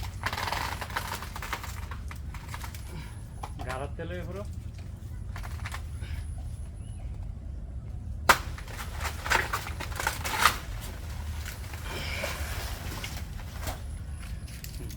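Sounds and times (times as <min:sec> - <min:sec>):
low steady rumble: 0:00.0 - 0:14.9
plant being cut with crunching strikes: 0:08.3 - 0:11.6.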